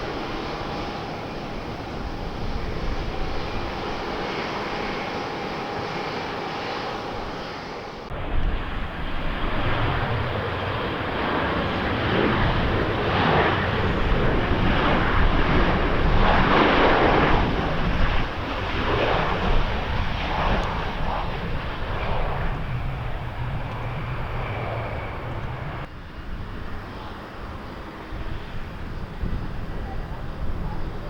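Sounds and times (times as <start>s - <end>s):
plane engines passing by: 0.0s - 31.0s.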